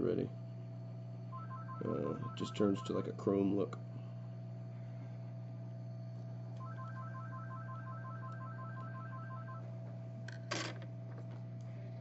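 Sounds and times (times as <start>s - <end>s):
electronic beeping trill: 1.4s - 3.0s, 6.6s - 9.7s.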